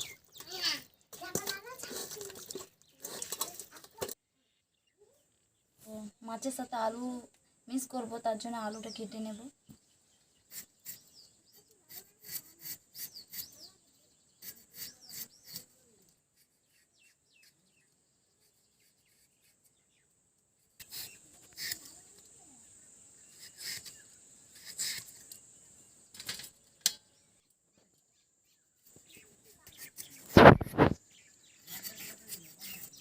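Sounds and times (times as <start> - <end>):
birds chirping: 0.0 - 11.7, 12.9 - 20.2, 20.9 - 33.0
knife cutting potatoes: 11.8 - 13.5, 20.8 - 22.0, 24.6 - 25.2, 31.7 - 33.0.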